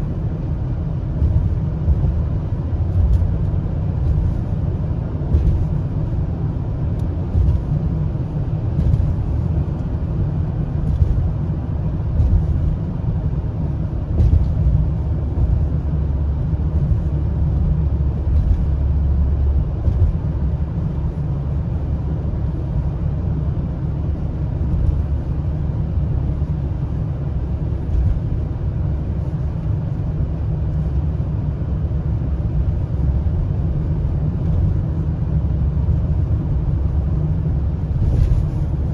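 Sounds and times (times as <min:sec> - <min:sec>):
car road and engine rumble: 0:00.0 - 0:38.9.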